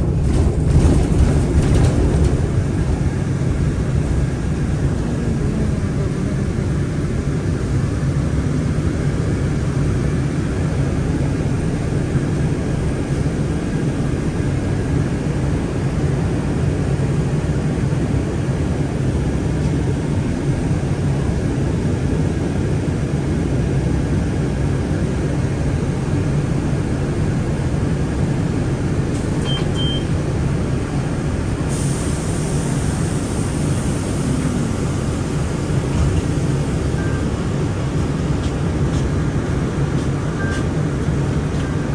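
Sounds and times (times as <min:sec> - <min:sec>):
bus engine rumble: 0:00.0 - 0:41.9
short high beeps: 0:29.4 - 0:30.1.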